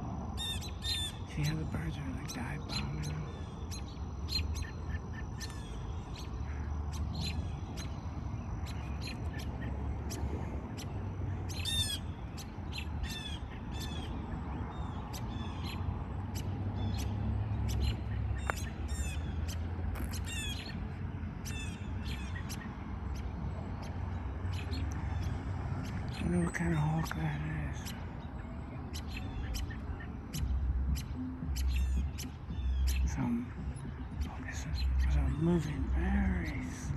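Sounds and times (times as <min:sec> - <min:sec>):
small birds alarm calls: 0:00.3 - 0:36.9
low rumble: 0:15.9 - 0:36.9.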